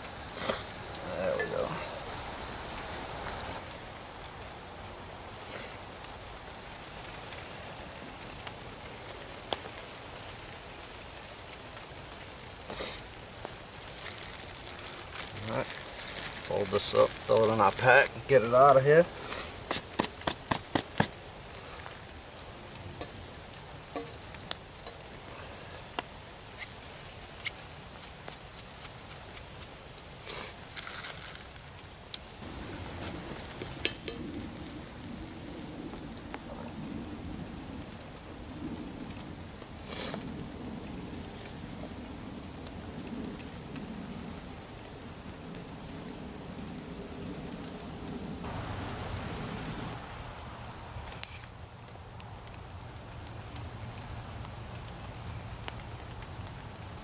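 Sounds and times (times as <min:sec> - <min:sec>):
batter frying in grease: 0:00.0 - 0:40.2
grease pops and crackles: 0:00.0 - 0:44.1.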